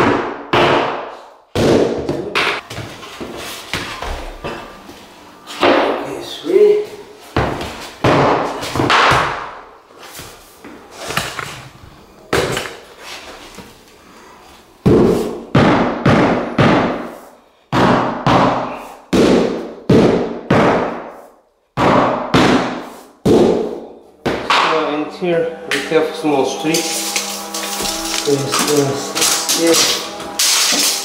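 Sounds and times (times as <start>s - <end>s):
hammer knocking wood flooring: 21.8s - 24.8s, 26.7s - 31.0s.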